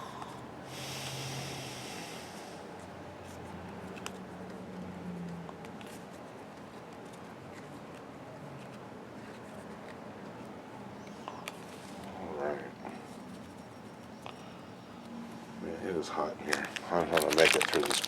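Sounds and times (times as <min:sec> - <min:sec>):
low room hum: 0:00.0 - 0:18.0
cards rustling: 0:16.4 - 0:18.0.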